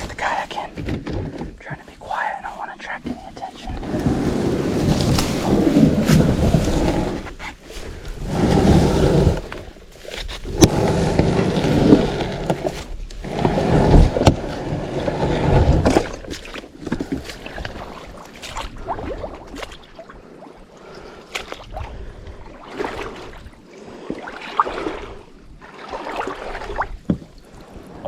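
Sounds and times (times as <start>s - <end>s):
kayak scraping while dragged: 3.7s - 19.8s.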